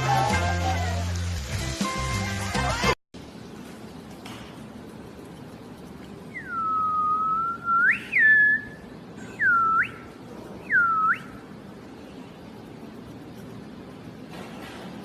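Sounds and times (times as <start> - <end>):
person whistling: 6.3 - 10.1, 10.7 - 11.4.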